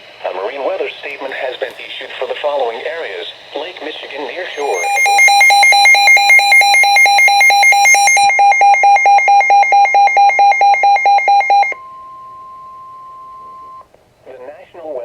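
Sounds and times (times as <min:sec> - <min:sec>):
steady tone: 0:04.4 - 0:08.3
alarm beeping rapidly: 0:04.5 - 0:11.8.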